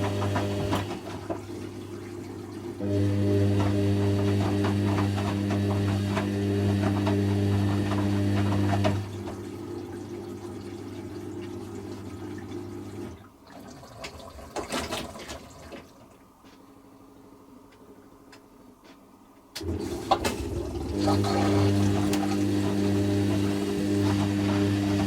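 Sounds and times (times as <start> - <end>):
washing machine humming: 0.0 - 25.0
water splashing: 19.8 - 25.0.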